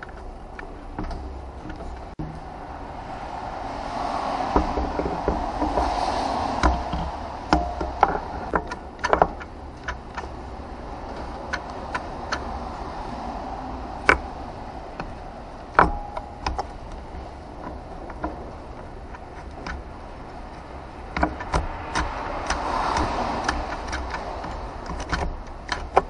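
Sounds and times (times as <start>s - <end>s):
steady background hum: 0.0s - 26.0s
metallic clicks of tools: 14.9s - 26.0s.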